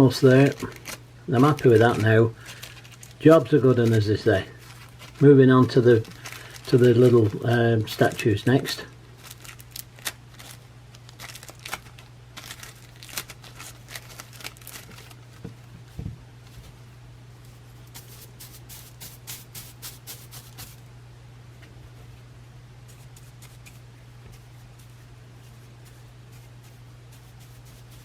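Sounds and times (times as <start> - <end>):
steady low hum: 0.0 - 28.0
paper crinkling and ticking: 0.1 - 15.5
soft thump: 15.9 - 16.2.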